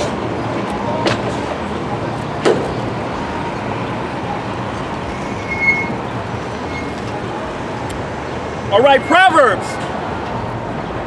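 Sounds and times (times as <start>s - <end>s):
road traffic passing: 0.0s - 11.0s
faint high squeal: 4.2s - 7.9s.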